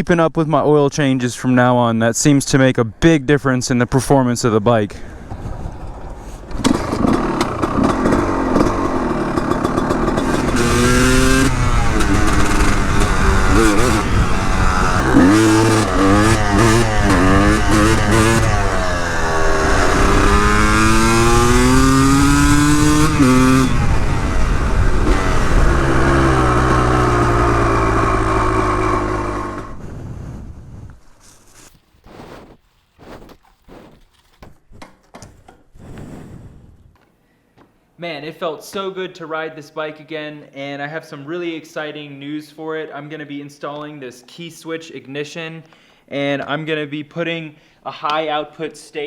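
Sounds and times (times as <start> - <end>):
motorcycle engine accelerating: 5.3 - 31.6.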